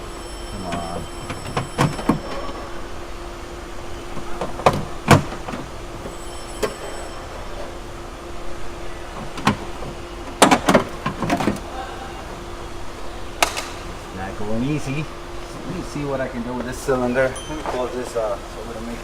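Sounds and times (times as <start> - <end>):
steady hum: 0.0 - 19.0.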